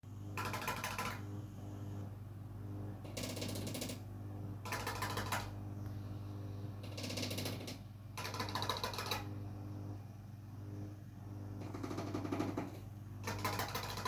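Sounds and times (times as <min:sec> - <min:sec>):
steady low hum: 0:00.1 - 0:14.0.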